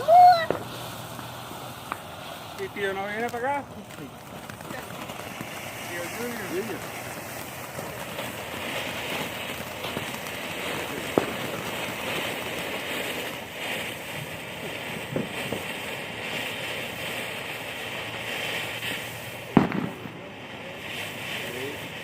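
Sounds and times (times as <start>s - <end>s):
fountain firework hissing: 0.0s - 22.0s
faint cracks: 1.8s - 5.6s
firework pop: 19.6s - 20.0s.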